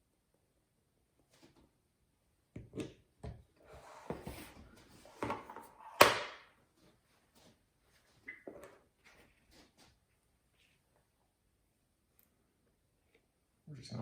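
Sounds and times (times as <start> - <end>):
rubbing and rustling: 6.7 - 11.1.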